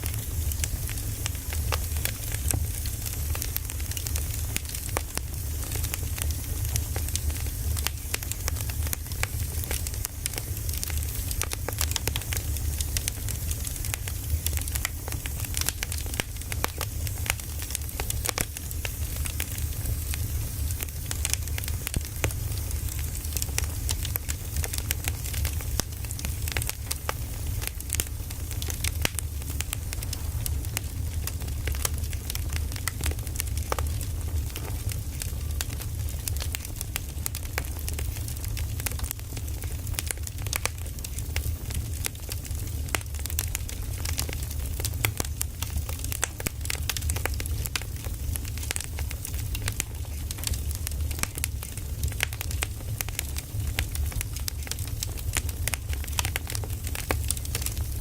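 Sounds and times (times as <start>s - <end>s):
firewood crackling and popping: 0.0s - 58.0s
low rumble: 28.0s - 32.6s.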